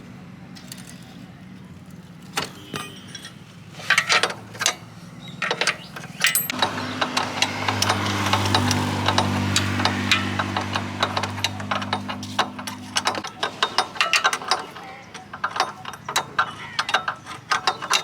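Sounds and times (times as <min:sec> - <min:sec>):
metal tools ratcheting: 0:02.4 - 0:18.0
low motor hum: 0:06.5 - 0:18.0.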